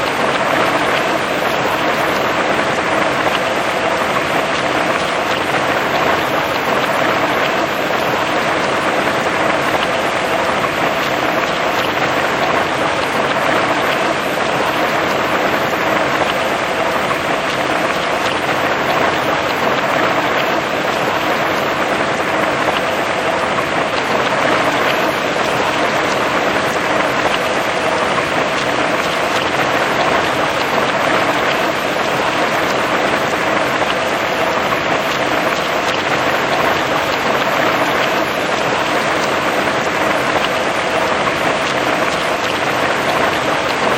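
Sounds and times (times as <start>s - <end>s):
heavy rain on grass and trees: 0.0s - 43.9s.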